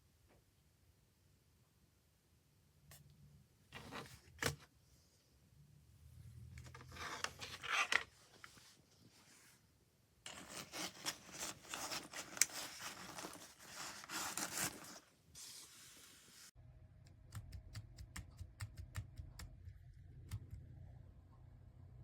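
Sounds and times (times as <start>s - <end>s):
rustling handling noise: 10.3s - 16.5s
low hum: 19.2s - 22.0s.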